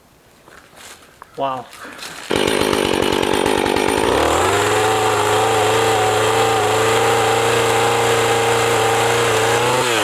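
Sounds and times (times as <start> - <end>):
chainsaw revving: 2.3 - 10.0.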